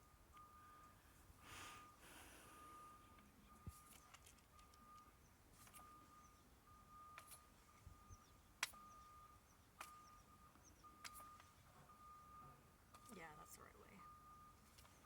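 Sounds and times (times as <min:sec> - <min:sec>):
electronic beep: 0:02.7 - 0:14.6.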